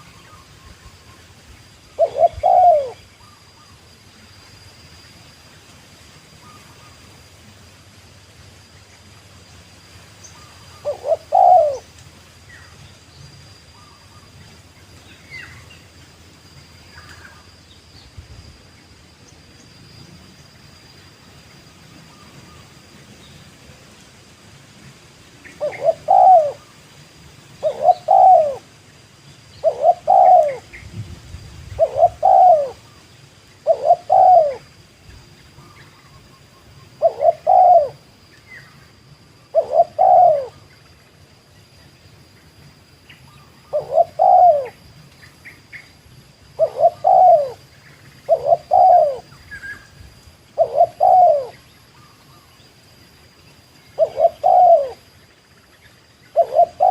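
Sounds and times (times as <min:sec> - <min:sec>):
dove cooing: 0:01.9 - 0:03.8, 0:10.5 - 0:11.9, 0:25.6 - 0:26.7, 0:27.6 - 0:28.7, 0:29.6 - 0:30.8, 0:31.7 - 0:33.0, 0:33.6 - 0:34.7, 0:37.0 - 0:38.0, 0:39.5 - 0:40.6, 0:43.6 - 0:44.8, 0:46.6 - 0:47.7, 0:48.3 - 0:49.6, 0:50.5 - 0:52.2, 0:54.0 - 0:55.1, 0:56.3 - 0:56.9.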